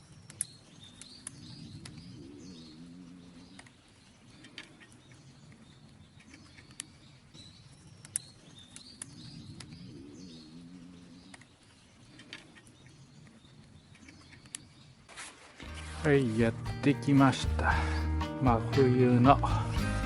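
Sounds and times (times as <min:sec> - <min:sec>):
small birds chirping: 0:00.0 - 0:18.1
wild boar grunting: 0:17.4 - 0:18.2.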